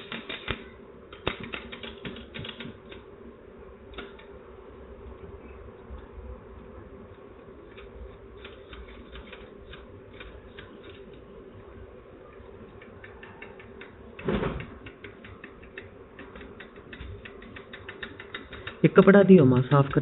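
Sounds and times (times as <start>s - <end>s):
typewriter keys clacking: 1.2s - 2.7s.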